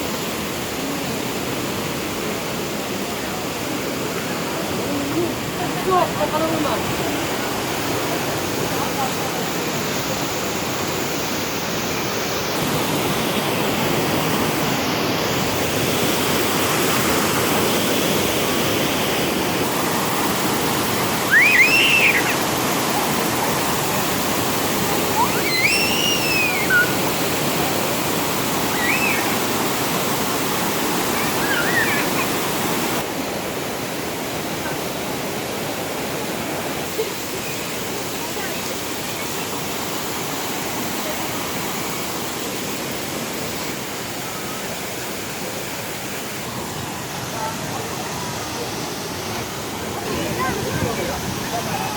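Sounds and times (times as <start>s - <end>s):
rush of falling water: 0.0s - 51.9s
high arching cries: 20.8s - 27.6s, 28.5s - 29.8s, 31.0s - 32.5s.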